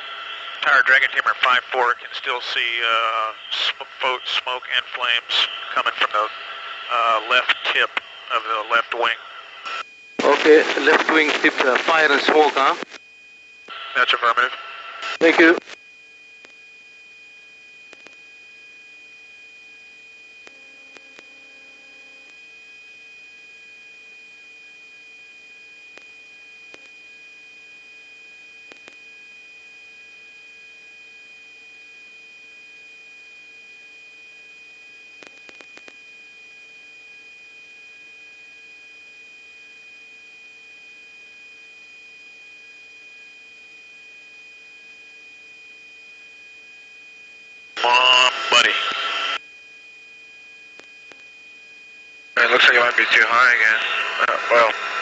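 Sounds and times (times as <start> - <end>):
radio static hum and whine: 0.0 - 13.0, 13.6 - 15.8, 47.8 - 49.4, 52.4 - 55.0.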